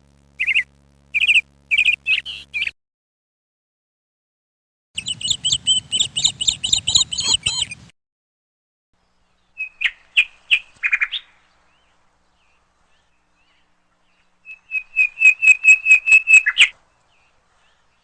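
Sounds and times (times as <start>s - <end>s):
high bird-like chirps: 0.4s - 2.8s, 5.0s - 7.9s, 14.4s - 16.8s.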